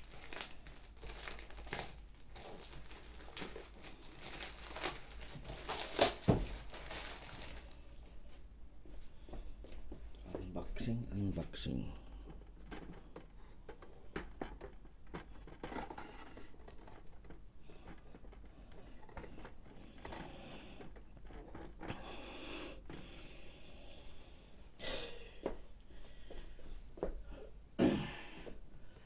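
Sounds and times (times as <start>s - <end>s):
packaging rustling and scraping: 0.0s - 8.4s, 9.8s - 23.2s.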